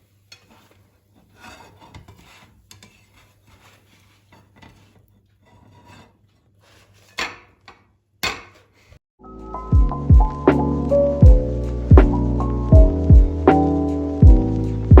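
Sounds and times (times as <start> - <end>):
soft scraping strokes: 0.0 - 7.2
sharp knock: 11.2 - 12.2.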